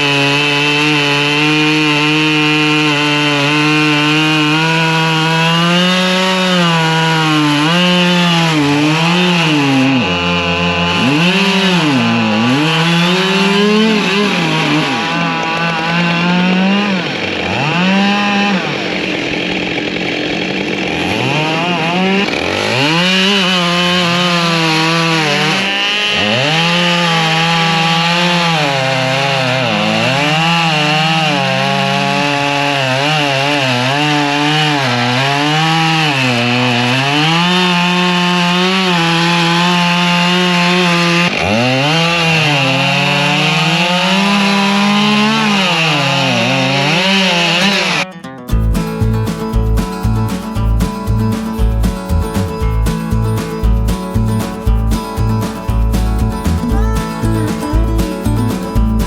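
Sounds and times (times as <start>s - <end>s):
chainsaw cutting firewood: 0.0s - 59.0s.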